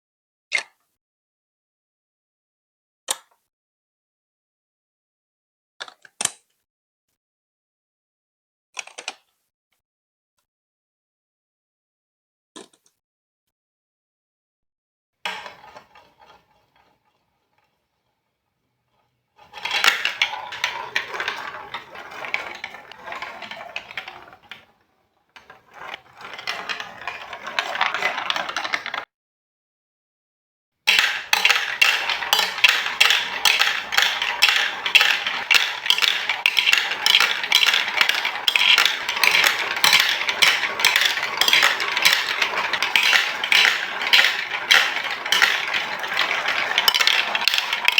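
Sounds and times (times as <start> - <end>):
marbles clattering down plastic run: 15.3 - 17.0, 19.4 - 29.1, 30.9 - 47.9.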